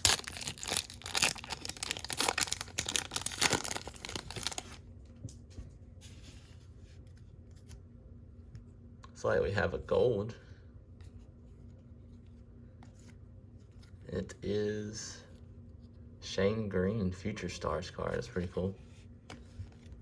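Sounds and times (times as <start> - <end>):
plastic wrapper tearing and crinkling: 0.0 - 4.8.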